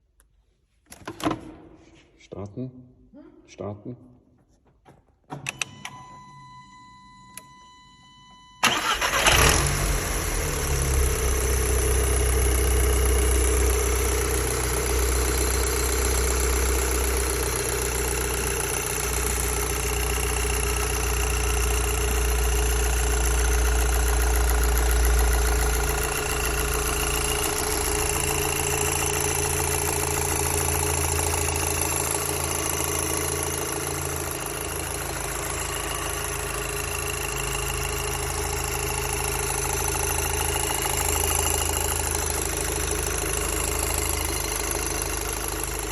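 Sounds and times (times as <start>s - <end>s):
car engine starting and idling: 8.6s - 45.9s.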